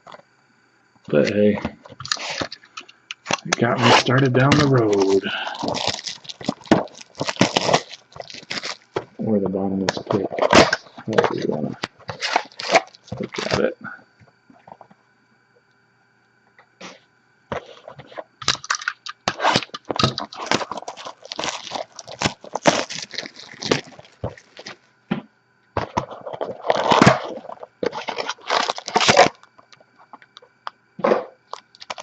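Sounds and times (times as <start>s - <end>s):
packaging crinkling and tearing: 1.9s - 9.2s, 9.9s - 13.6s, 17.7s - 24.8s, 25.9s - 30.3s, 31.5s - 32.0s.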